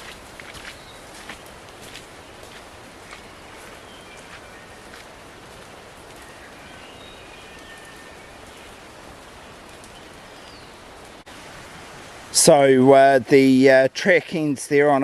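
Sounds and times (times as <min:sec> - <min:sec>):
wet forest hiss: 0:00.0 - 0:14.2
faint high bird calls: 0:03.1 - 0:05.1, 0:06.1 - 0:10.9.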